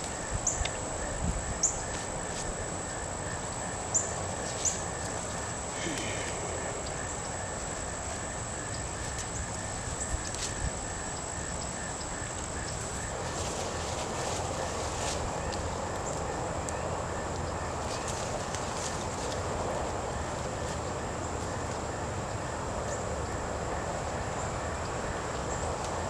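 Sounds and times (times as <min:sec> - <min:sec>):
high thin whine: 0:00.0 - 0:16.2
background hiss: 0:00.0 - 0:26.0.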